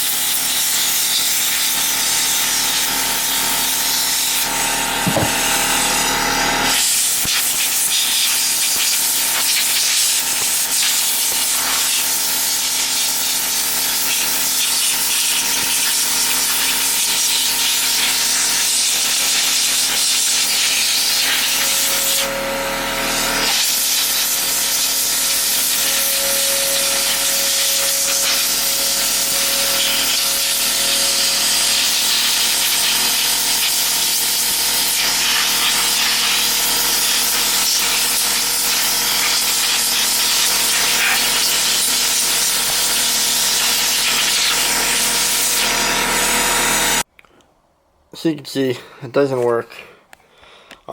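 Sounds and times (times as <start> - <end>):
compressed air hissing: 23.5 - 33.7.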